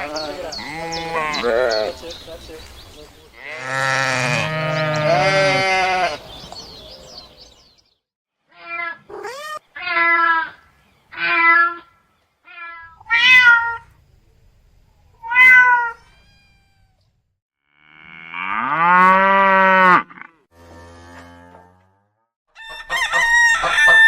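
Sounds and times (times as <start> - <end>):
cat meowing: 12.5 - 13.9, 15.2 - 17.1.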